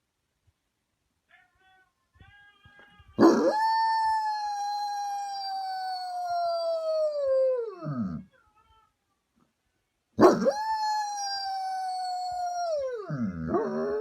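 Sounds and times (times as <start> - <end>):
dog howling: 3.2 - 8.2, 10.2 - 14.0.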